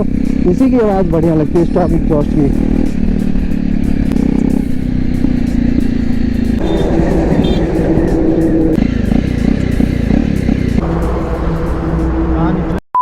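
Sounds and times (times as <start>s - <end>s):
motorcycle engine exhaust: 0.0s - 12.7s
engine chain noise: 2.9s - 12.8s.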